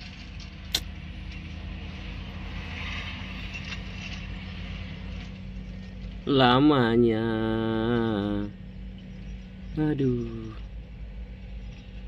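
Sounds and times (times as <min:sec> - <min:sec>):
vehicle engine humming: 0:00.0 - 0:12.0
sharp click: 0:00.7 - 0:00.9.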